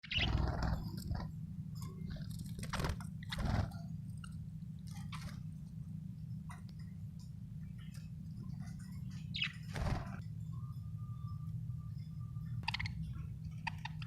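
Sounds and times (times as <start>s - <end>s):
steady low hum: 0.0s - 14.0s
budgerigar chirping and clicking: 12.6s - 14.0s.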